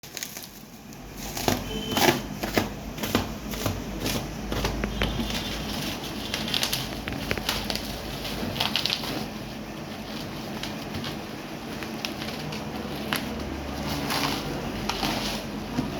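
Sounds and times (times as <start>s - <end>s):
packaging rustling: 0.0s - 15.9s
packaging clicks and taps: 1.3s - 7.9s.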